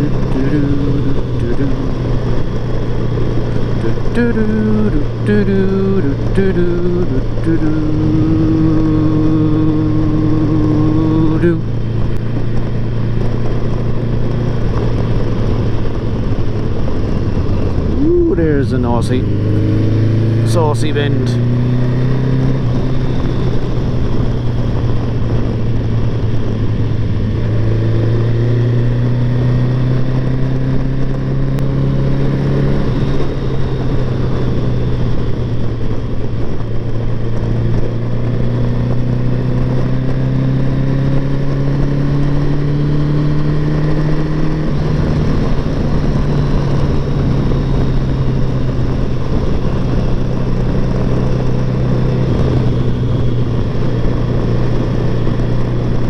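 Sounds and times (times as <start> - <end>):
wind rushing: 7.3 - 20.5.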